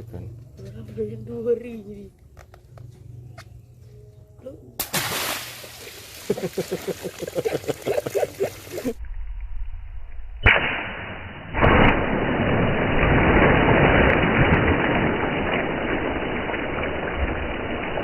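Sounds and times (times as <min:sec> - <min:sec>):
water balloon bursting: 0:04.8 - 0:09.0, 0:11.5 - 0:18.0.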